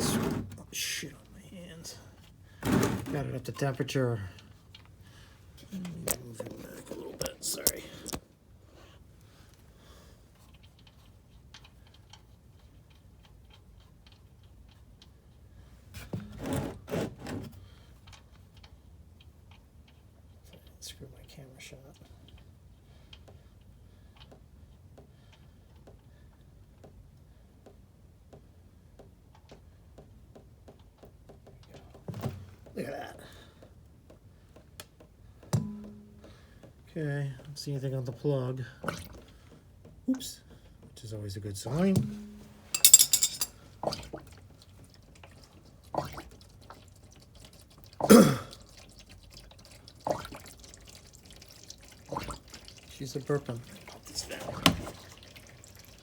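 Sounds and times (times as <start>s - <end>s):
oil glugging: 4.4s - 8.3s, 42.0s - 56.0s
low steady hum: 35.6s - 39.4s
oil draining into a pan: 43.8s - 56.0s.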